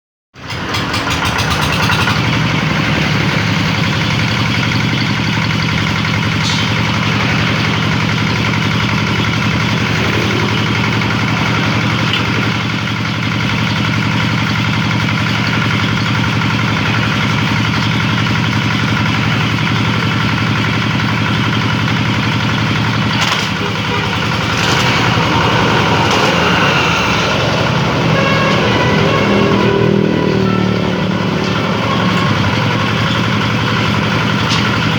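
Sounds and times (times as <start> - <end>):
diesel engine running: 0.4 - 34.9
sharp cracks: 22.4 - 28.0.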